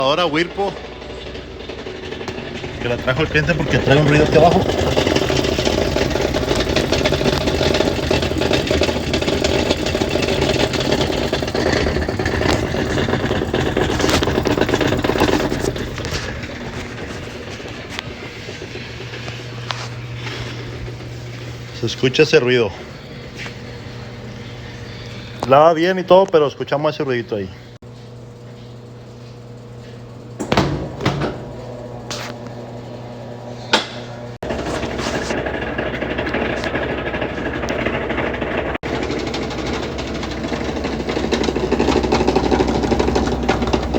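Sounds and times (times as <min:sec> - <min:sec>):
washing machine rattling: 0:00.0 - 0:23.2, 0:30.3 - 0:32.1, 0:34.4 - 0:43.9
washing machine knocks: 0:30.4 - 0:31.7.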